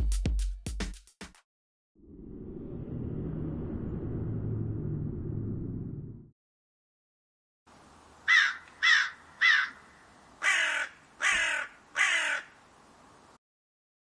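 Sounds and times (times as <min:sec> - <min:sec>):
crow cawing: 0:08.3 - 0:12.6.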